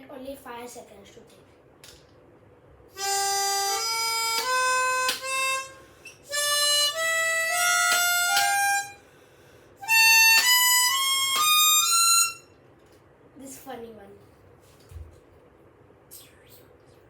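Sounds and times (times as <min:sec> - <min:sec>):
reedy instrument playing scale: 0:03.0 - 0:09.0, 0:09.8 - 0:12.5.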